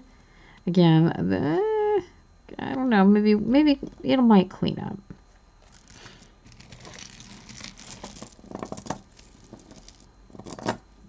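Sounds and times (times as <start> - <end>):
rustling: 5.3 - 10.8
jewelry clicking and rattling: 5.6 - 10.8.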